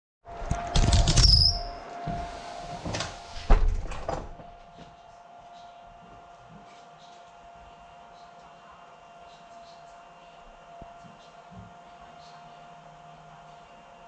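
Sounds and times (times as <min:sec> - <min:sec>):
short high squeak: 0:01.1 - 0:01.8.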